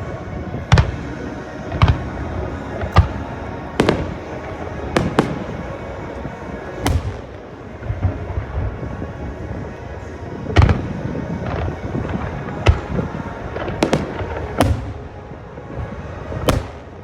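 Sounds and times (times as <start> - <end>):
fireworks bursting: 0.0 - 17.0
weak fireworks pops: 2.8 - 9.1, 10.6 - 17.0.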